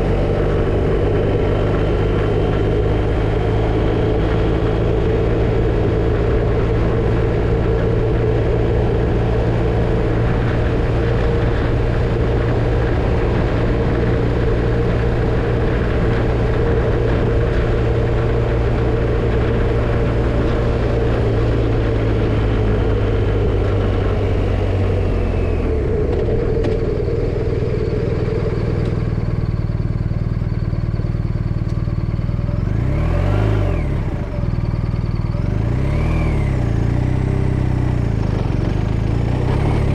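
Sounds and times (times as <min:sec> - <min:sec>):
rushing wind noise: 0:00.0 - 0:29.6
motorcycle engine cruising: 0:00.0 - 0:39.9.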